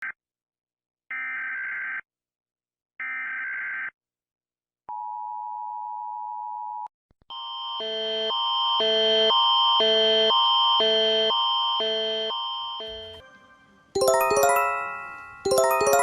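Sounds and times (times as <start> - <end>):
pulsing alarm tone: 7.5 - 13.2
two-tone attention signal: 12.8 - 13.4.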